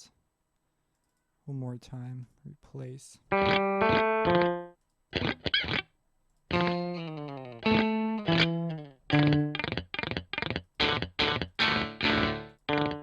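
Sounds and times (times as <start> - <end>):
electric guitar notes: 3.3 - 5.9, 6.5 - 13.0.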